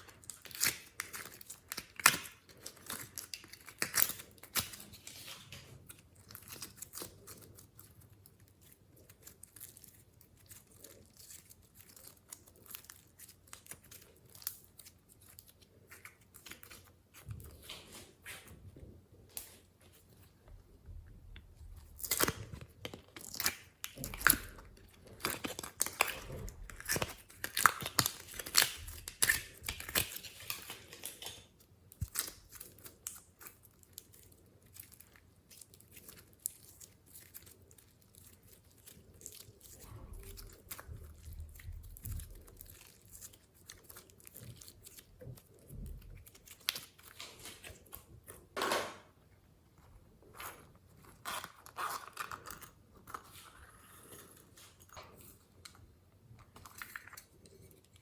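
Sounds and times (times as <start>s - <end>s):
slime crackling and popping: 0.0s - 16.9s, 21.8s - 48.4s
slime squishing: 0.0s - 48.6s.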